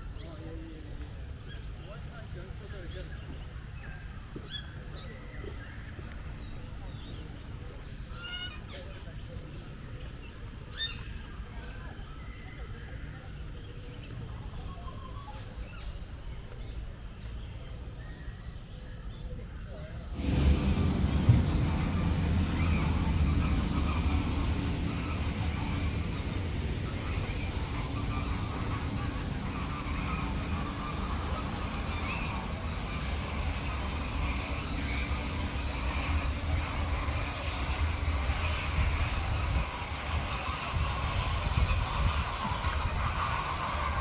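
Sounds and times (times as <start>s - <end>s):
steady low rumble: 20.0s - 44.0s
birds calling: 20.1s - 44.0s.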